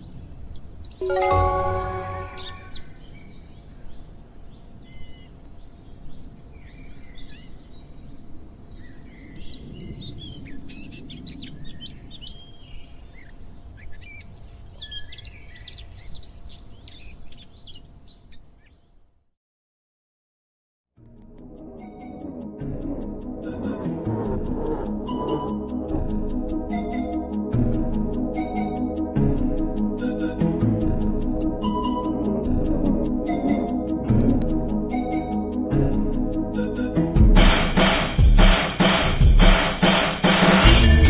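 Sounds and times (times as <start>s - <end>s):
songbirds chirping: 0.0s - 19.0s
low outdoor ambience: 0.0s - 19.3s
loud pitched tone: 1.0s - 2.9s.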